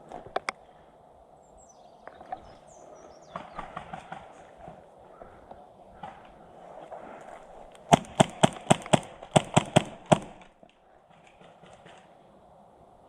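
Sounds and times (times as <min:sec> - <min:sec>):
airsoft gun shots: 0:07.9 - 0:10.5.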